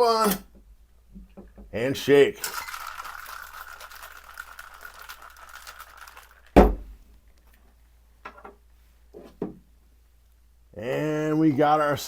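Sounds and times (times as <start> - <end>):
ice rattling in cocktail shaker: 2.4 - 6.7
loud thump: 6.6 - 7.0.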